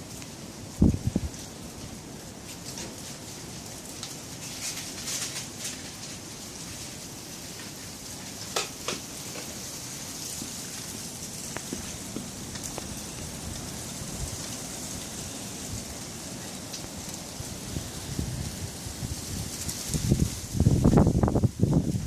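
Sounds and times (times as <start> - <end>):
wind blowing: 0.0 - 22.0.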